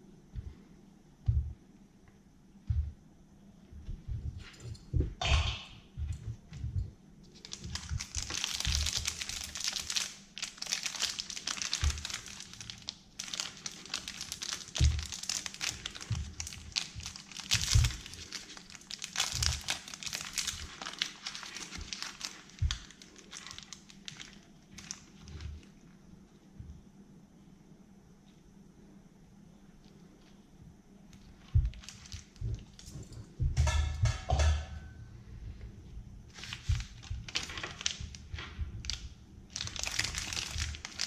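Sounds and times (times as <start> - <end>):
plastic wrappers crinkling and tearing: 7.3 - 25.8, 31.2 - 33.1, 36.3 - 41.0.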